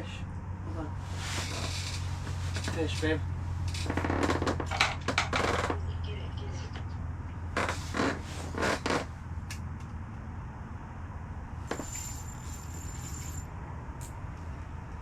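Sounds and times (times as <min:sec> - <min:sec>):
scraping and rubbing handling: 0:01.0 - 0:04.4, 0:07.6 - 0:09.1.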